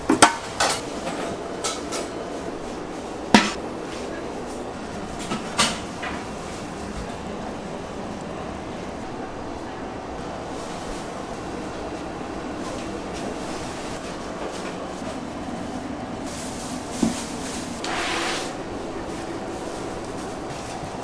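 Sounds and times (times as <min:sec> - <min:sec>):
kitchen machinery hum: 0:00.0 - 0:21.0.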